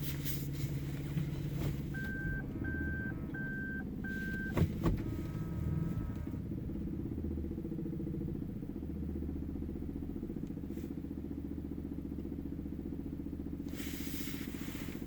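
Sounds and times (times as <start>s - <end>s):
car engine drone from cabin: 0.0s - 15.0s.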